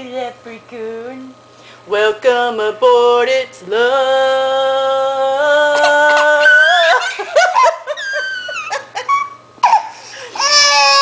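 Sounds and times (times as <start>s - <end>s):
baby crying: 5.8s - 7.0s, 9.6s - 11.0s.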